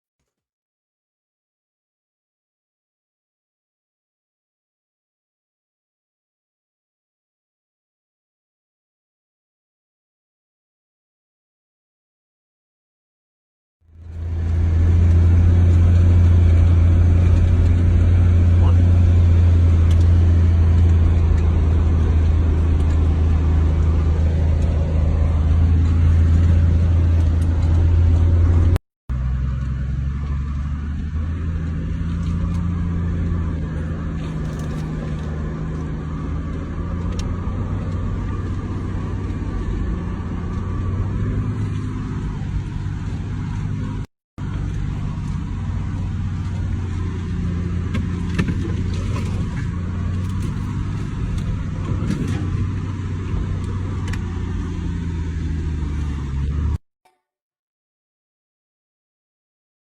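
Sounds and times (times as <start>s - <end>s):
strong deep hum: 13.9s - 56.8s
vehicle rumble: 13.9s - 56.8s.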